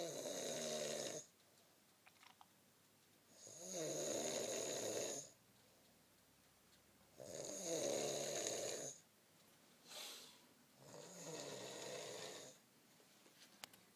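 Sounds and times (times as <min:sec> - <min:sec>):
person snoring: 0:00.0 - 0:01.3, 0:03.4 - 0:05.3, 0:07.2 - 0:09.0, 0:10.8 - 0:12.6.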